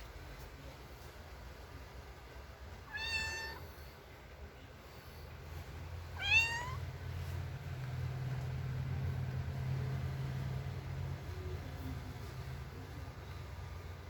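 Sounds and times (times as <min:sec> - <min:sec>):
cat meowing: 0:02.8 - 0:03.7, 0:06.2 - 0:07.0.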